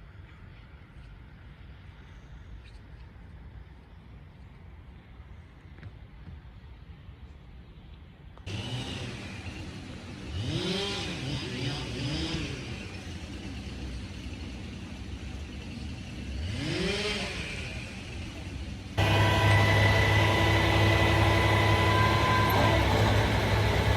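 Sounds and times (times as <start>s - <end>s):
road noise: 8.4s - 23.9s
car engine accelerating: 8.5s - 14.0s, 15.5s - 23.9s.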